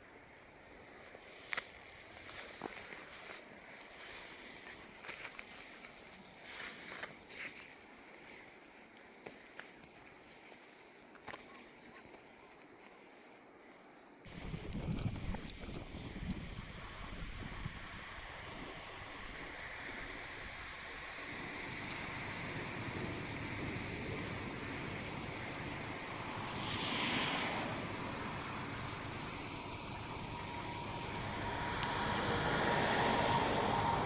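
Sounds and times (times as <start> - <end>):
vehicle noise: 14.3 - 34.0.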